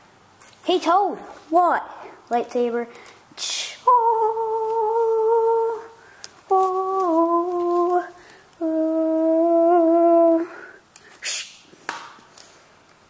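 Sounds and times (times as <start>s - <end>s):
person humming: 3.4s - 10.8s.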